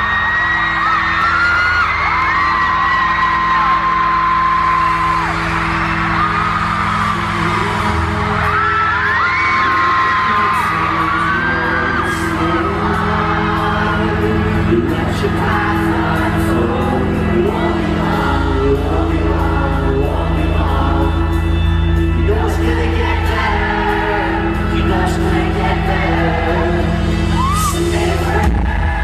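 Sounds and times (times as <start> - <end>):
fans whooping and screaming: 0.0 - 19.2, 19.9 - 29.0
live pop-rock music: 0.0 - 29.0
person singing: 6.8 - 29.0.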